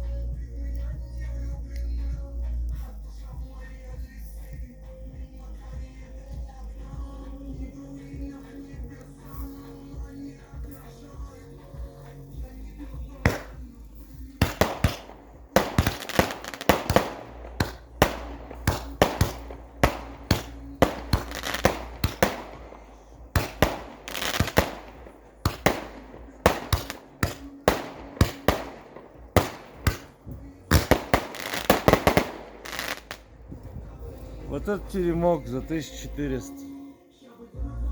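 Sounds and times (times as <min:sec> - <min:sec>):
background music: 0:00.0 - 0:37.9
firework cake bangs: 0:13.0 - 0:33.2.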